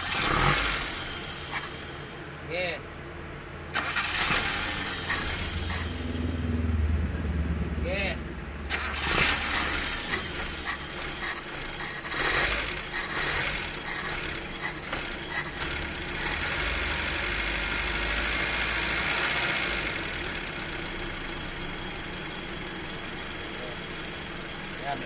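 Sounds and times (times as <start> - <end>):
car engine idling unevenly: 0.0 - 25.0.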